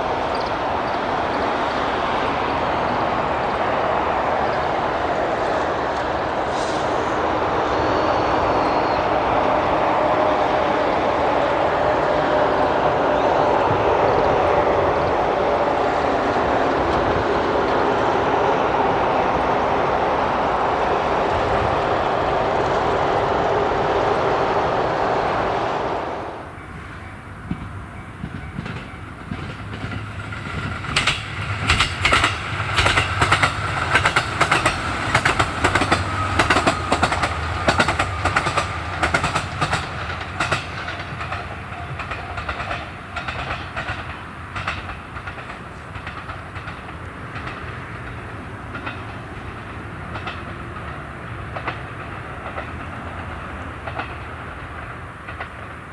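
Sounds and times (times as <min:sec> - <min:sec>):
railcar engine hum: 0:00.0 - 0:55.9
road traffic noise: 0:00.0 - 0:55.9
wheels clicking over rail joints: 0:26.5 - 0:55.9.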